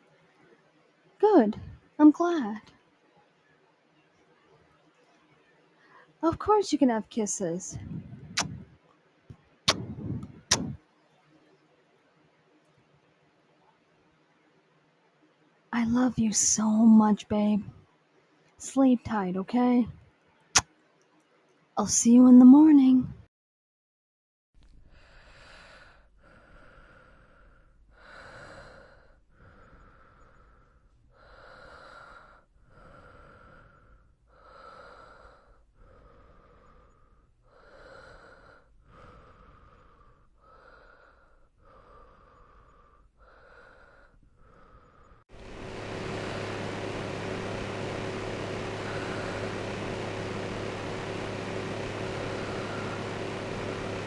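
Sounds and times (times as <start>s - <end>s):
electric fan noise: 1.2s - 1.8s, 7.6s - 8.8s, 9.7s - 10.8s, 45.3s - 54.0s
woman breathing slowly: 24.8s - 45.2s.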